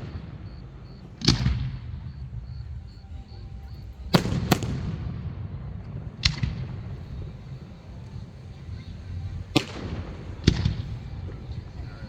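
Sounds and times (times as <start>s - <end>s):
steady low rumble: 0.0s - 12.0s
fireworks shells bursting: 4.0s - 4.9s.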